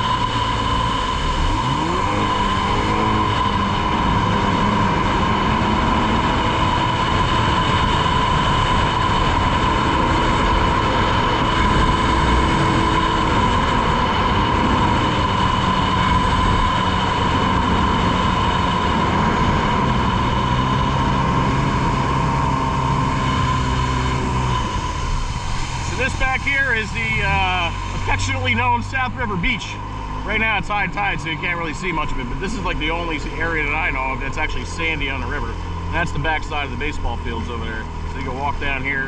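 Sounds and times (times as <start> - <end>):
personal watercraft engine whine: 0.0 - 39.0.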